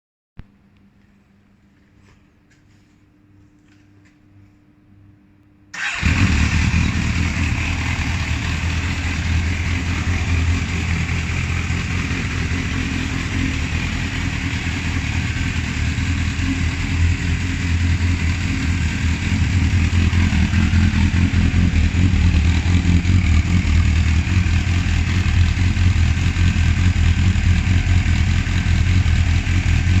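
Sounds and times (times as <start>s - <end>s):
motorcycle engine idling: 5.8s - 30.0s.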